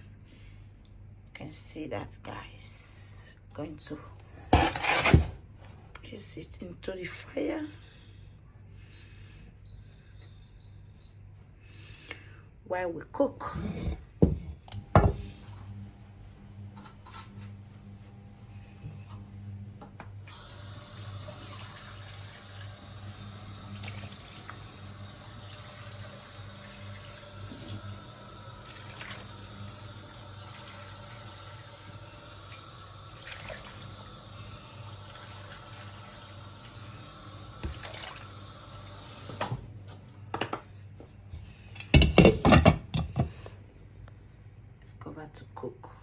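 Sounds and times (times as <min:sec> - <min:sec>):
tap water running: 0:19.0 - 0:39.7.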